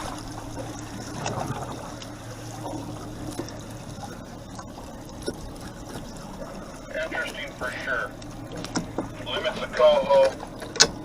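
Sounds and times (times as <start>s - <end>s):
boat motor humming: 0.0s - 11.0s
water trickling and splashing: 0.0s - 11.0s
small knocks: 8.2s - 9.2s.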